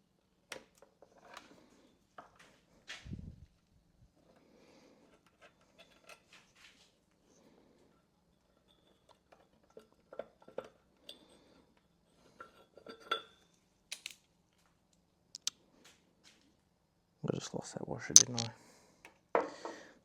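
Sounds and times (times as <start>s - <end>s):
metal parts and tools clinking: 18.2s - 18.5s.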